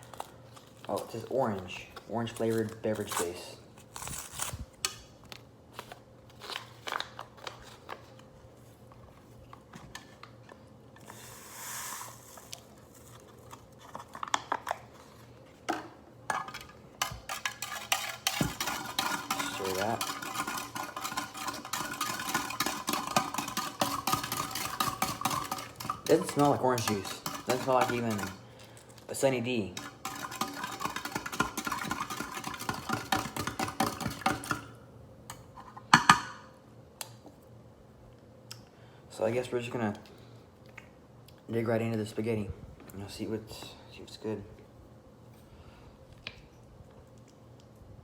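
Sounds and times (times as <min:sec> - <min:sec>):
spoon clinking against container: 0:17.3 - 0:28.4.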